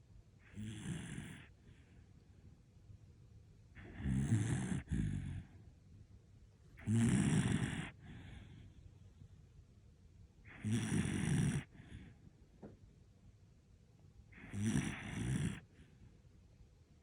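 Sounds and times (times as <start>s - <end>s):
dog snoring: 0.4s - 2.0s, 3.7s - 5.6s, 6.8s - 8.8s, 10.4s - 12.2s, 14.3s - 15.9s.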